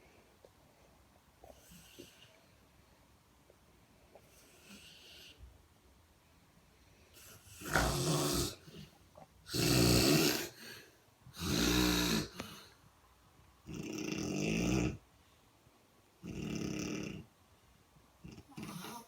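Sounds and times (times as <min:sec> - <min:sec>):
person snoring: 0:07.2 - 0:08.9, 0:09.5 - 0:10.8, 0:11.4 - 0:12.7.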